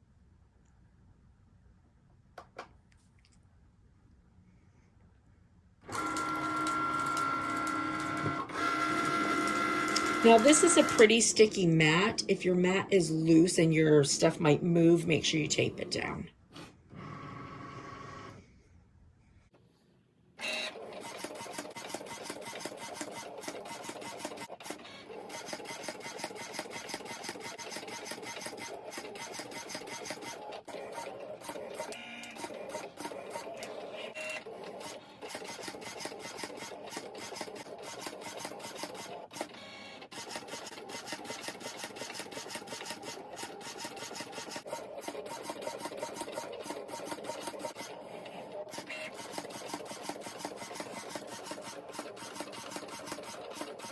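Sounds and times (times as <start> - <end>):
cutting machine motor running: 5.9 - 11.4, 20.4 - 53.9.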